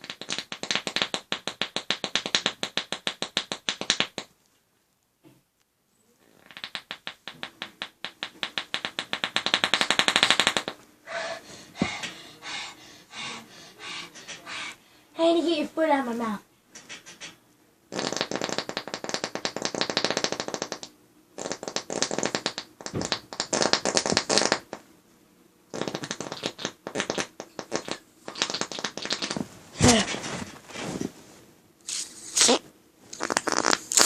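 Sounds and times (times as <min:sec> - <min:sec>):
rasping fart sounds: 0:00.0 - 0:04.3, 0:06.3 - 0:14.8, 0:17.9 - 0:24.8, 0:25.7 - 0:31.1, 0:31.9 - 0:34.0
short squeaky farts: 0:17.9 - 0:24.7, 0:32.3 - 0:34.0.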